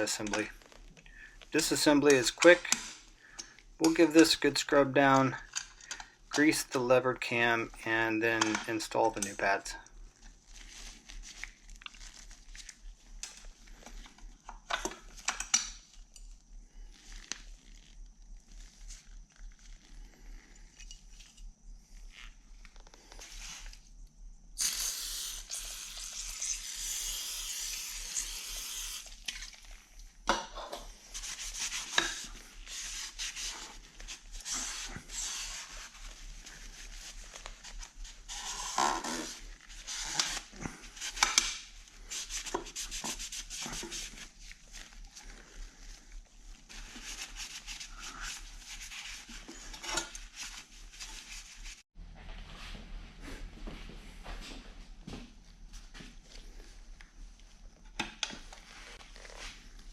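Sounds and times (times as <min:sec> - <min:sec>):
steady hiss: 0:00.0 - 0:05.5, 0:18.4 - 0:29.9, 0:30.8 - 0:51.8.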